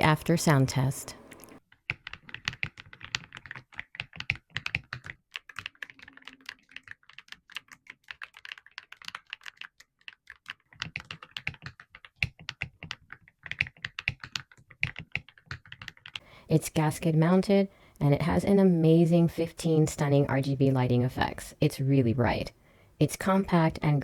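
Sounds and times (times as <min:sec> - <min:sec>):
mechanical keyboard typing: 0:01.4 - 0:16.2.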